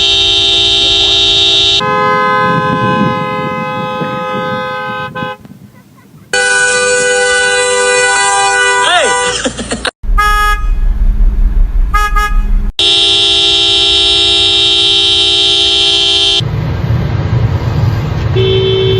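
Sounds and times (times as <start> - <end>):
car horn blaring: 0.0 - 5.5, 6.3 - 9.4, 10.1 - 11.0, 11.9 - 16.4, 18.4 - 18.9
low rumble: 10.0 - 12.8.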